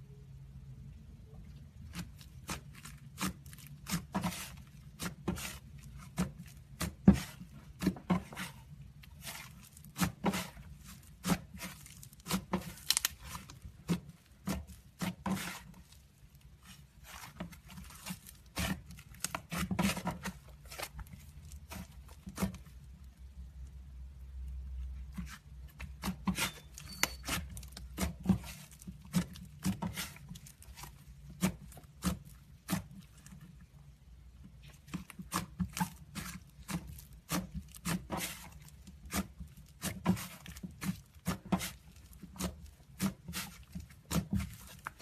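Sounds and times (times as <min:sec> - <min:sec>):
slime popping and crackling: 0:10.9 - 0:15.2.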